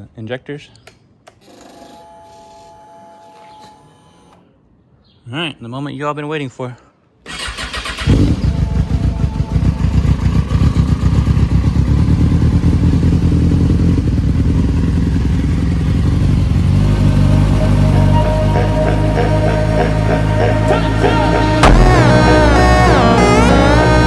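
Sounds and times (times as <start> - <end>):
motorcycle engine idling: 7.9 - 22.1
music: 17.3 - 24.0.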